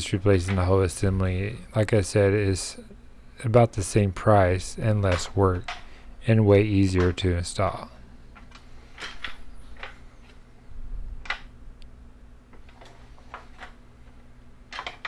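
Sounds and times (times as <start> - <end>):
faint low hum: 0.0 - 15.0
plastic parts clicking: 14.7 - 15.0.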